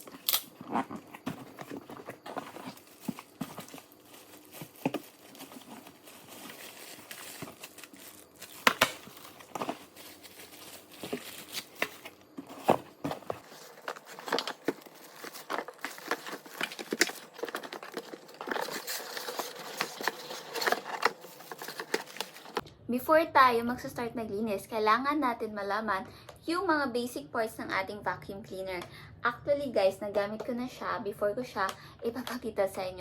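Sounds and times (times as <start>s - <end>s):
plastic wrapping crinkling: 0.0s - 22.6s.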